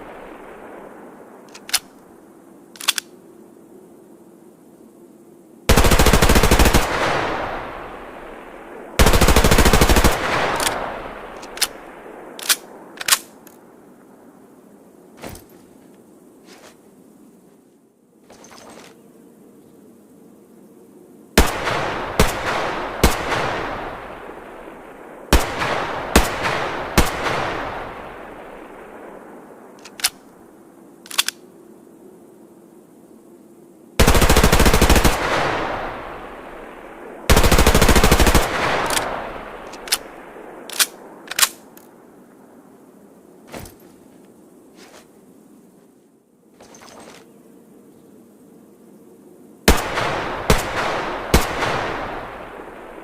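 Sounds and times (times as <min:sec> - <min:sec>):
submachine gun full-auto bursts: 0:09.0 - 0:10.7, 0:34.0 - 0:35.2, 0:37.3 - 0:39.0.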